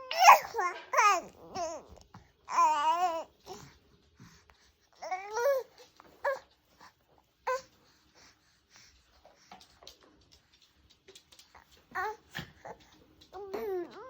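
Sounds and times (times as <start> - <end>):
baby babbling and cooing: 0.0 - 3.7, 5.0 - 6.5, 7.4 - 7.7, 11.5 - 14.0.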